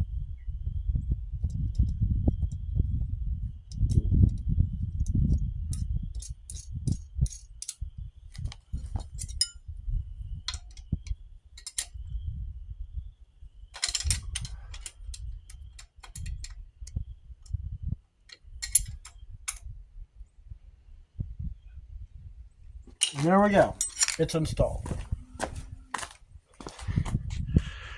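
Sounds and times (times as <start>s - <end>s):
metallic clicks of hand tools: 5.0s - 7.8s, 11.6s - 12.0s, 18.3s - 19.6s, 23.0s - 24.3s.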